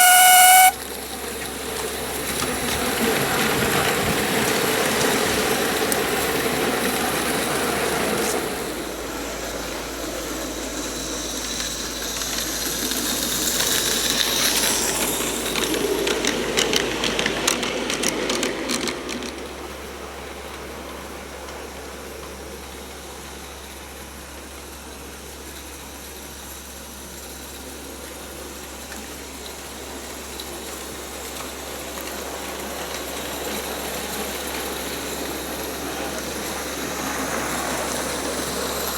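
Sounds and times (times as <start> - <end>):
quick clicks of wheels: 0.0 - 22.8
model steam locomotive running: 0.0 - 38.9.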